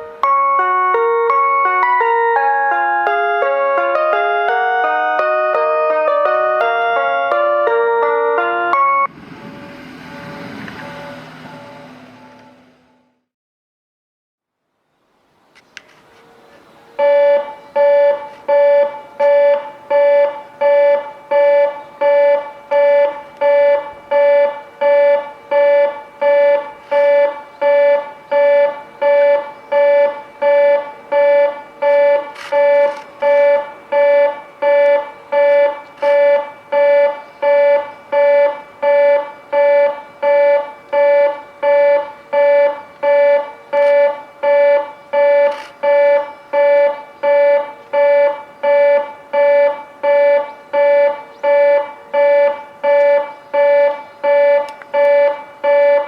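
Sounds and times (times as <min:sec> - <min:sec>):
electronic warning beeps: 0:17.0 - 0:56.0.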